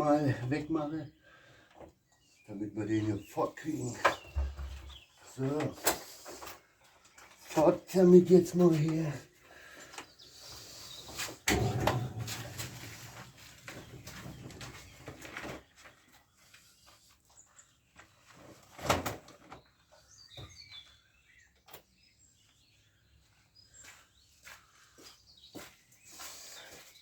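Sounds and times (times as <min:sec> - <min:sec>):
rustling: 0:11.2 - 0:16.1
sharp knock: 0:11.5 - 0:13.0.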